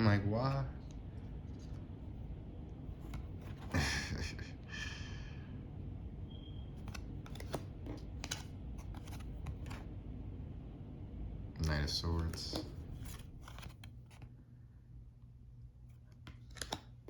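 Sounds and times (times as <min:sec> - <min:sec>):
cards clicking and tapping: 0:02.9 - 0:03.7, 0:06.7 - 0:09.8, 0:11.6 - 0:14.3, 0:15.9 - 0:17.0
card stock rustling: 0:02.9 - 0:03.8, 0:06.7 - 0:09.9, 0:11.6 - 0:14.3.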